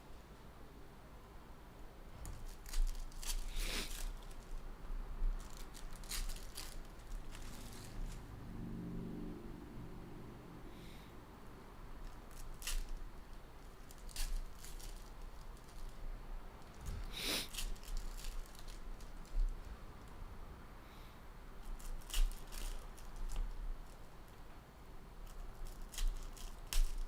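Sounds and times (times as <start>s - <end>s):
foil wrapper crinkling: 2.2s - 4.7s, 5.3s - 8.2s, 12.0s - 13.0s, 13.6s - 19.6s, 21.6s - 24.0s, 25.2s - 27.0s
cards clicking and snapping: 25.3s - 27.0s.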